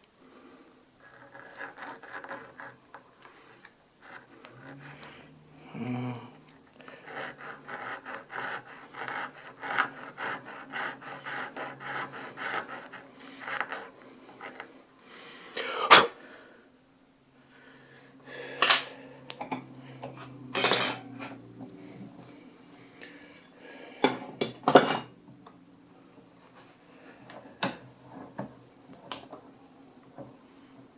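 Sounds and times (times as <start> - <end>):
hand file filing metal: 1.0 - 2.8, 6.8 - 14.7.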